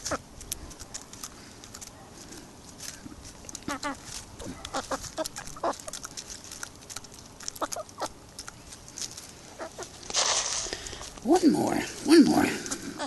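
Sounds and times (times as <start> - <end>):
hens clucking: 3.4 - 10.2.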